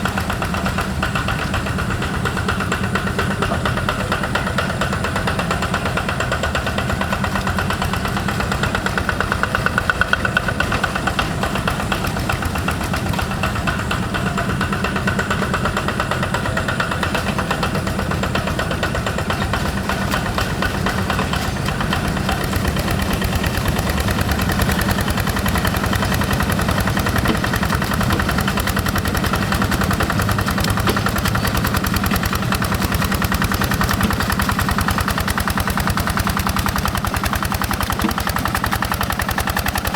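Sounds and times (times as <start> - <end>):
diesel engine chugging: 0.0 - 39.9.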